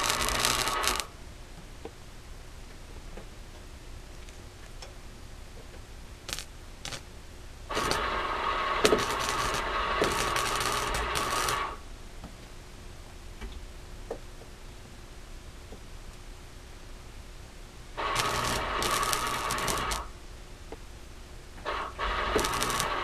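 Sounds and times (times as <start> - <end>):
welder arc crackling: 0.0 - 1.2, 6.2 - 11.9, 18.0 - 20.8, 21.6 - 23.0.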